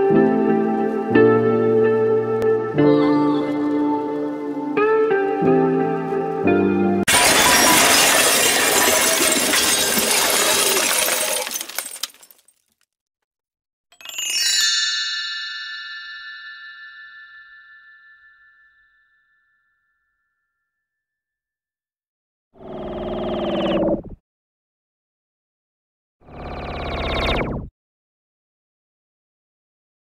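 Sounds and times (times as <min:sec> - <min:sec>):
guitar tune: 0:00.0 - 0:07.0
junk and debris crashing: 0:07.1 - 0:12.5
bell tree ringing: 0:14.0 - 0:20.1.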